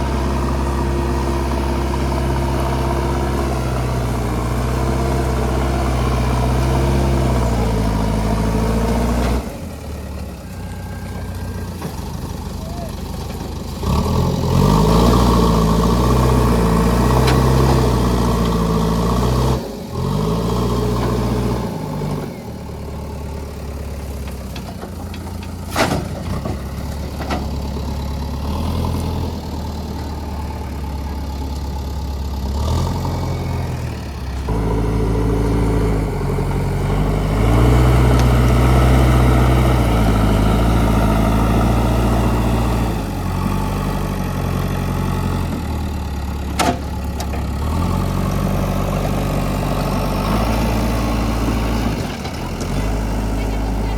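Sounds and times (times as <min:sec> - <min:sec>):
diesel engine revving: 0:00.0 - 0:53.9.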